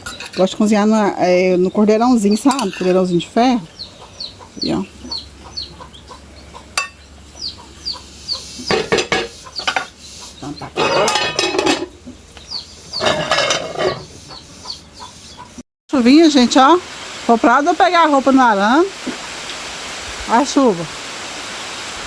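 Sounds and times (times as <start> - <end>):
pots and dishes clattering: 0.0 - 0.6, 2.5 - 3.0, 6.7 - 7.0, 8.7 - 10.0, 10.7 - 12.0, 13.0 - 14.1
chickens clucking: 0.0 - 15.6.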